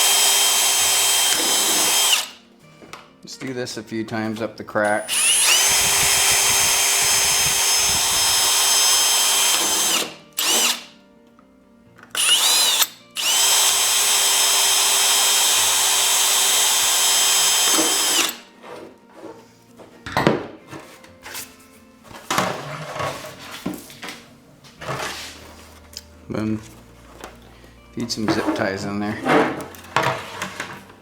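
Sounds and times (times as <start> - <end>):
power drill whining: 0.0 - 2.4, 4.8 - 11.0, 12.1 - 18.5.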